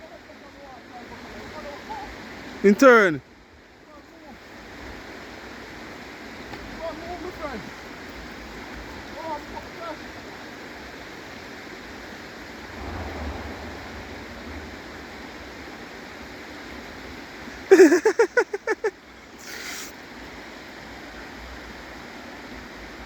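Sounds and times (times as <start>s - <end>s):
stream flowing: 0.0s - 23.0s
brief hiss: 12.6s - 15.9s, 19.4s - 20.1s.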